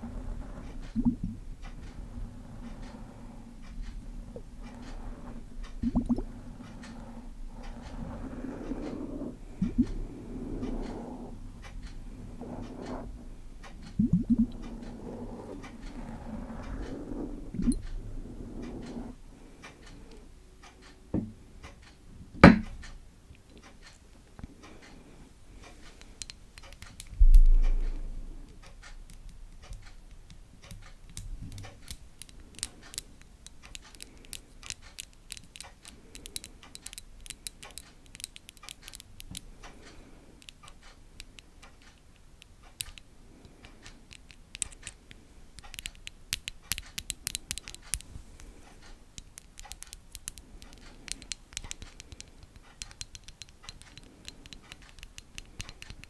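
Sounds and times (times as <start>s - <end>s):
fine scratching: 0.0s - 20.3s
tapping clicks: 0.0s - 25.0s, 25.6s - 56.0s.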